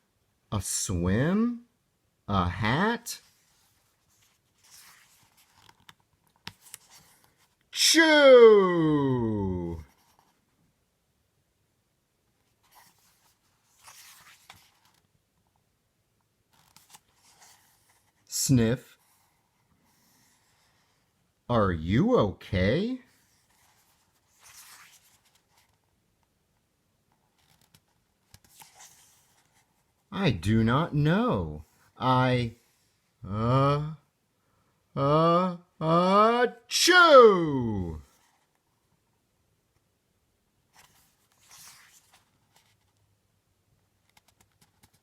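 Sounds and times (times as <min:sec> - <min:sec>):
book page turning: 0:03.2 - 0:07.6, 0:12.5 - 0:15.1, 0:16.5 - 0:18.2, 0:23.2 - 0:25.9, 0:27.2 - 0:29.9, 0:40.8 - 0:43.0.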